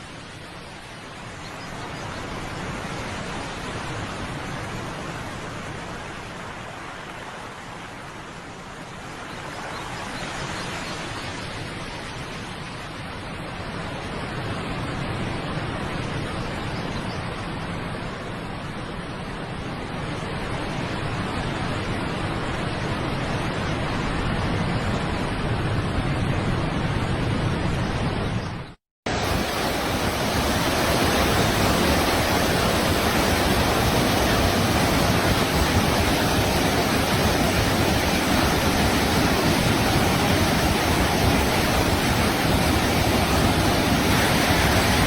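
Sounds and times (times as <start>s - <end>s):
waterfall rushing: 29.1s - 45.0s.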